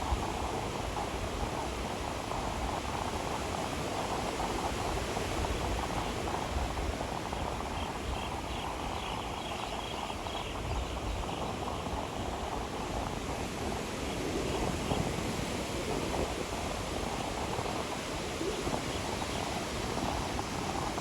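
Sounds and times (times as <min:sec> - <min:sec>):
sea waves washing on beach: 0:00.0 - 0:21.0.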